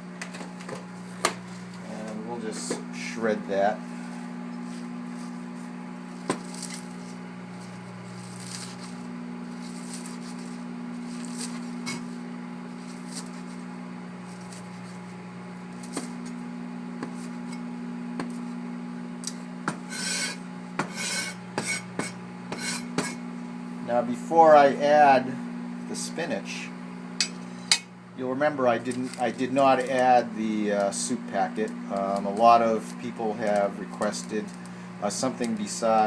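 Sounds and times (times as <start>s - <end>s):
microwave oven humming: 0.0s - 36.0s
knife cutting spinach: 8.1s - 12.1s.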